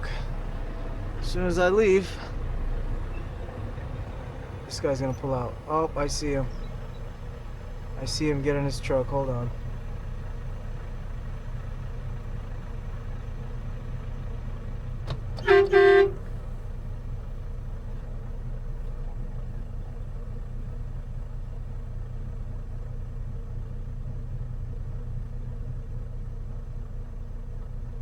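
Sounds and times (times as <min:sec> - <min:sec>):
diesel truck engine idling: 0:00.0 - 0:28.0
vehicle horn honks: 0:15.4 - 0:16.4.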